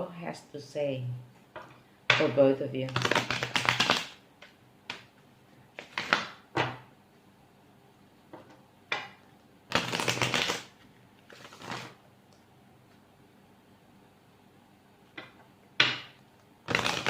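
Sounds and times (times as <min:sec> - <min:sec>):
cards being shuffled: 0:02.9 - 0:05.1, 0:05.7 - 0:06.4, 0:09.7 - 0:12.0, 0:16.6 - 0:17.0.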